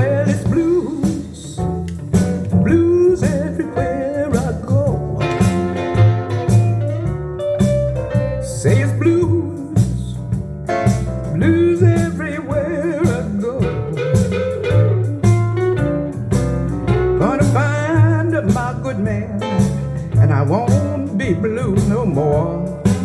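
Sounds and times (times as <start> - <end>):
person singing: 0.0 - 1.6, 2.6 - 6.5, 11.3 - 14.5, 17.2 - 23.0
bass line: 0.0 - 23.0
blues song: 0.0 - 23.0
guitar: 0.0 - 23.0.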